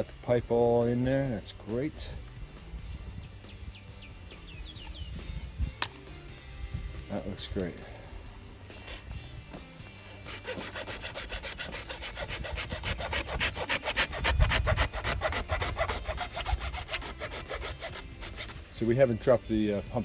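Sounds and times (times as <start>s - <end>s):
hand saw cutting pipe: 10.1s - 18.8s.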